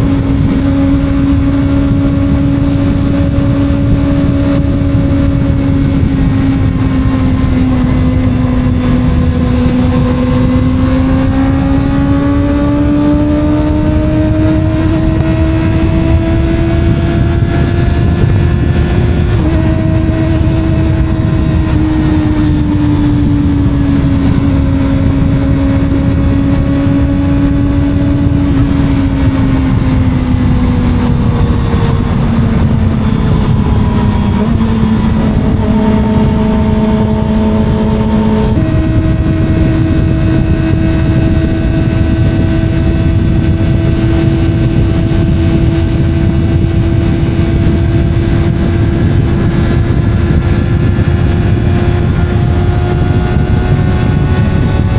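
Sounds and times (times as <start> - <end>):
motorcycle engine at high revs: 0.0 - 54.9
wind rumble on microphone: 0.0 - 54.9.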